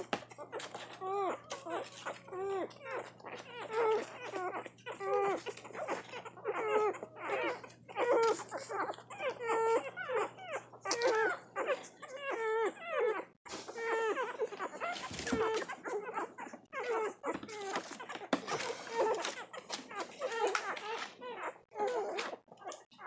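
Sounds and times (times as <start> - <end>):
puppies whimpering and squeaking: 0.0 - 23.0.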